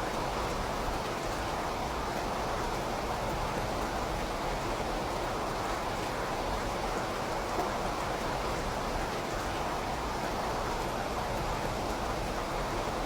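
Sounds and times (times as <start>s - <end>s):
steady rain: 0.0s - 13.0s.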